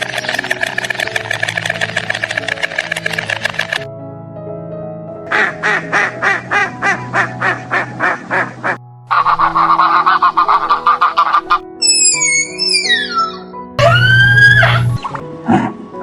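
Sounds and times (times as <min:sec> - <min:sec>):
background music with held notes: 0:00.0 - 0:16.0
duck quacking: 0:05.3 - 0:11.6.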